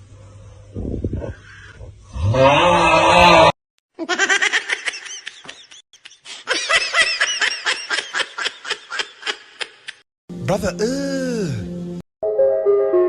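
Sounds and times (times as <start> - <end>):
laughing sound effect: 4.0 - 10.0.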